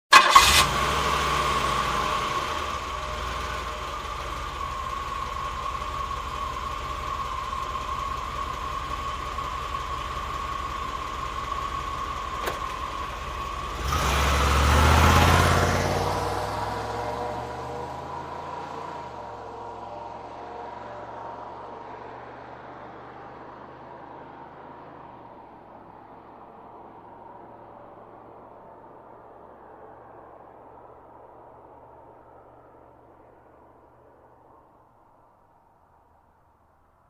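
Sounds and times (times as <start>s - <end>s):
engine revving: 0.1s - 10.4s, 11.9s - 21.3s
car engine starting and idling: 0.1s - 31.4s.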